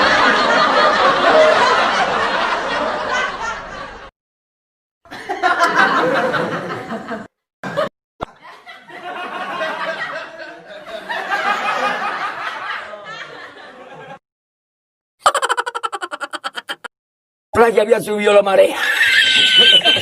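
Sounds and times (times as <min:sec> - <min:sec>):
hysterical laughter: 0:00.0 - 0:04.1, 0:15.2 - 0:16.9, 0:18.8 - 0:20.0.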